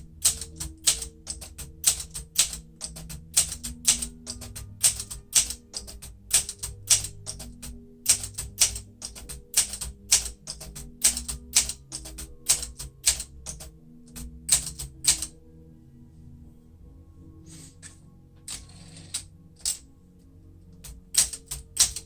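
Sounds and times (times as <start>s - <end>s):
manual typewriter typing: 0.0s - 15.3s, 20.8s - 22.0s.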